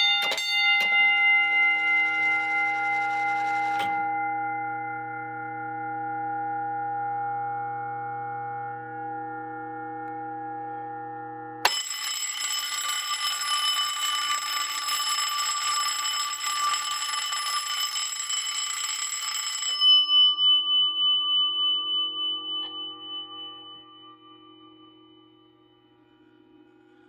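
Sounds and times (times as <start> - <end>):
electric fire alarm bell ringing: 0.0 - 4.6, 11.6 - 26.0.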